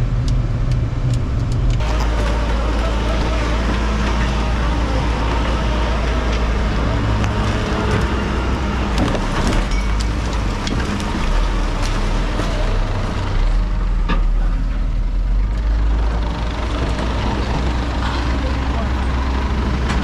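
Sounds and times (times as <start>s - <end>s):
heavy vehicle engine running: 0.0s - 20.0s
metallic clanks and rattles: 8.9s - 11.3s.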